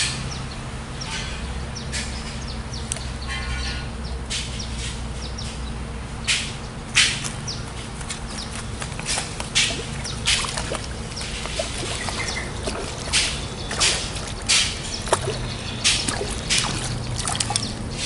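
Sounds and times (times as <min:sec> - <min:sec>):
water splashing and trickling: 0:07.0 - 0:18.0
water dripping: 0:08.2 - 0:18.0.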